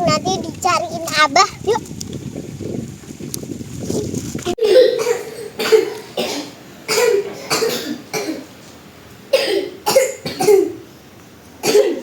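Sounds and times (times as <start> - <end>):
child coughing: 4.5 - 8.5, 9.3 - 10.8, 11.6 - 12.0.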